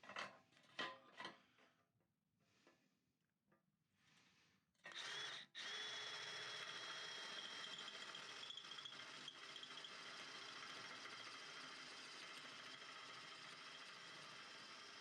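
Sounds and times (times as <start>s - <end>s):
small motor whining and buzzing: 4.9s - 15.0s.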